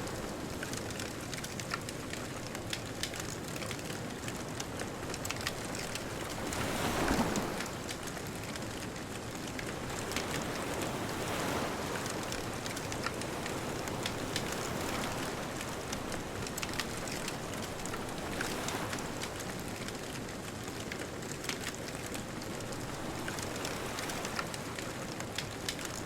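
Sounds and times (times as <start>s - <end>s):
wood bonfire crackling and popping: 0.0s - 26.0s
ocean surf: 4.3s - 8.9s, 9.5s - 20.5s, 22.0s - 26.0s.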